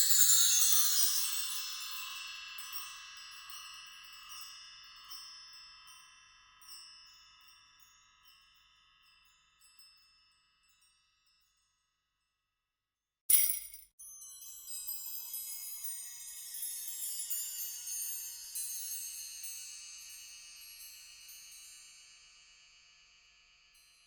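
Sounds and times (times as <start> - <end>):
high-pitched metal chimes ringing: 13.3 - 22.0.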